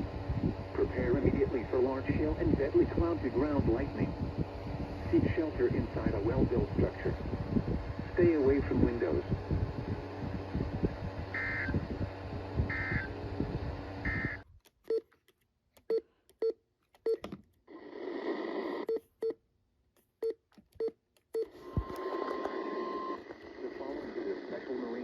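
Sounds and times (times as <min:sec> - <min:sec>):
radio hiss: 0:00.8 - 0:04.2, 0:04.9 - 0:07.3, 0:08.1 - 0:09.4, 0:21.7 - 0:25.0
steady tone: 0:02.4 - 0:14.4
warbling data bursts: 0:11.3 - 0:11.9, 0:12.7 - 0:13.2.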